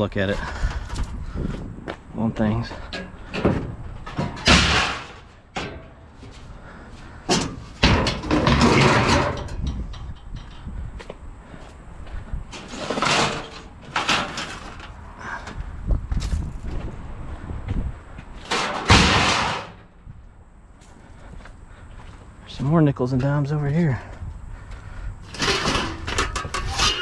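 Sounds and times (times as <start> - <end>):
scrap metal knocking and thudding: 2.8 - 6.5, 7.1 - 10.7, 12.5 - 15.6, 18.4 - 19.9, 25.3 - 27.0
scrap metal rattling clatter: 2.8 - 6.5, 7.2 - 10.7, 12.5 - 15.0, 18.4 - 19.9, 25.2 - 27.0.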